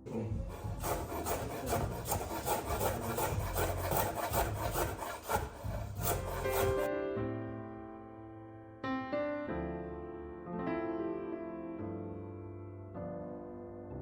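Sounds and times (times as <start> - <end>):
kitchen utensil scraping: 0.2 - 6.9.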